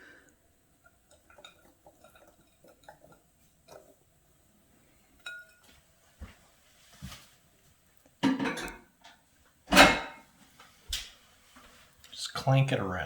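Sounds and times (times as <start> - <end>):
utensils clinking against dishes: 5.2 - 5.7, 9.7 - 10.2.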